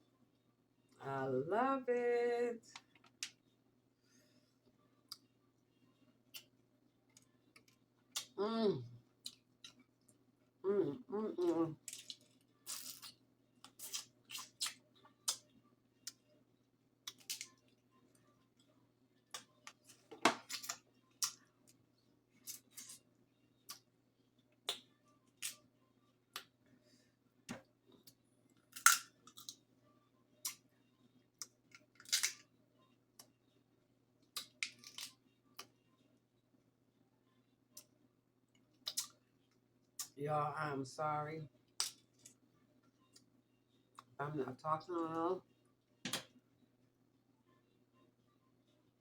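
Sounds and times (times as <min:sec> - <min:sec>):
faint low hum: 0:00.0 - 0:49.0
crab shells cracking: 0:28.7 - 0:29.6, 0:31.7 - 0:32.4, 0:34.4 - 0:35.1.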